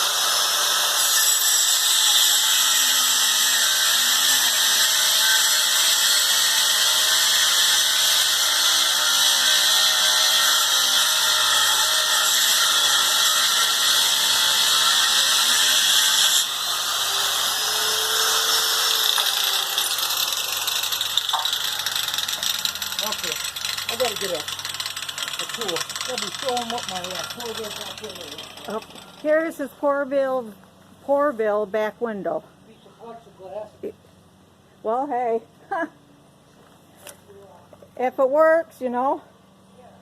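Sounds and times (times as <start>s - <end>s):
grinder grinding metal rod: 0.0s - 29.3s.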